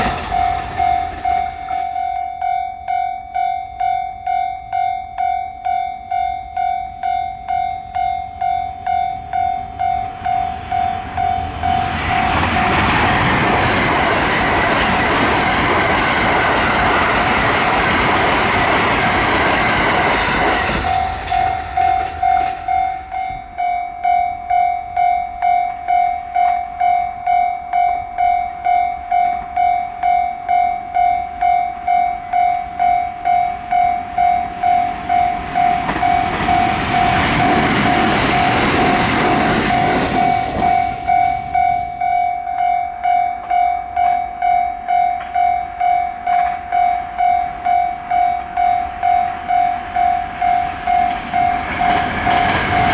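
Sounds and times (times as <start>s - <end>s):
level-crossing warning bell: 0.0s - 52.9s
train rumbling over crossing: 0.0s - 52.9s.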